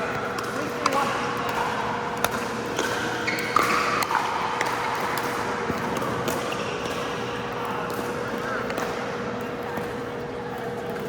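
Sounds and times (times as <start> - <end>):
paddles hitting plastic ball: 0.3 - 7.1
shoe squeaks: 2.8 - 3.8.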